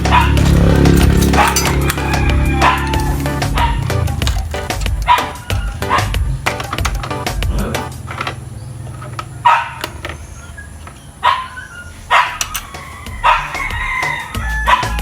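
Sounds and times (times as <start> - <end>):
dog barking: 0.0 - 6.8, 9.3 - 15.0.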